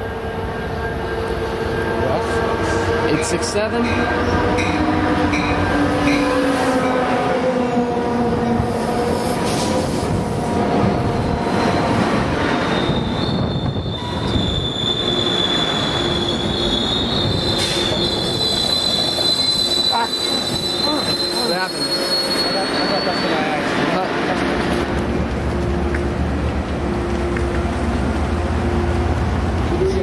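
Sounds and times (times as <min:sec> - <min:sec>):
wheel and brake squeal: 0:11.2 - 0:23.6
locomotive engine passing: 0:13.9 - 0:30.0.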